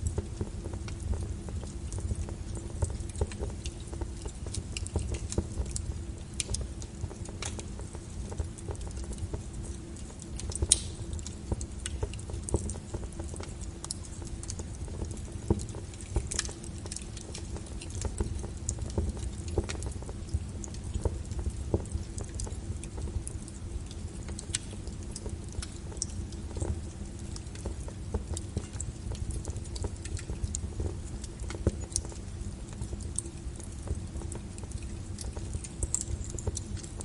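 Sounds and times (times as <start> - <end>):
low steady rumble: 0.0 - 37.0
sharp pops and snaps: 0.0 - 37.0
wood fire crackling: 0.0 - 37.0.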